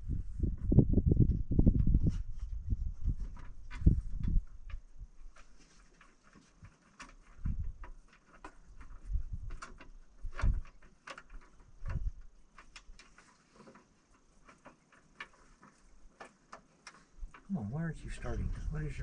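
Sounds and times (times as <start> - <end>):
clicks and knocks of hands working: 3.3 - 17.5.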